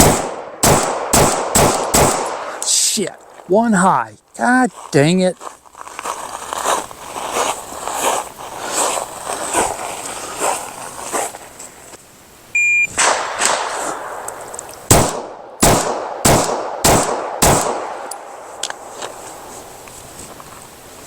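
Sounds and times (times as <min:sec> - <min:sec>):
faint gunshots: 0:00.0 - 0:02.6, 0:13.0 - 0:14.2, 0:14.9 - 0:18.1
pistol shots: 0:00.0 - 0:02.6, 0:13.0 - 0:14.2, 0:14.9 - 0:18.2
electronic shot timer beep: 0:12.6 - 0:13.0.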